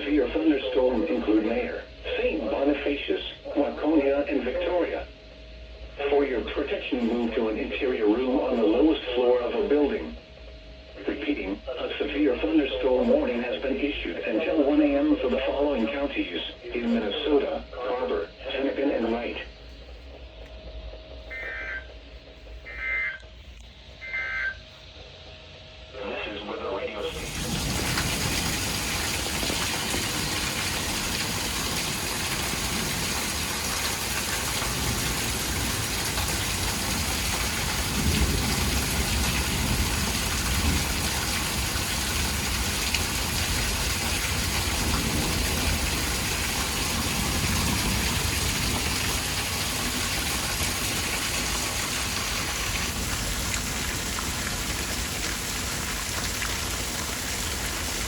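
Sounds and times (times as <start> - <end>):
radio static hiss: 0.0 - 5.2, 5.9 - 10.2, 10.9 - 24.9, 25.9 - 31.4.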